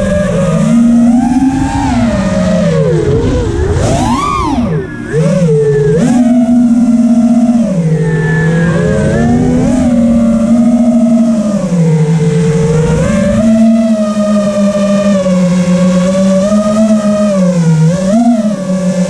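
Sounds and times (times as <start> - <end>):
rushing wind noise: 0.0 - 6.1
drone motors whining: 0.0 - 19.0.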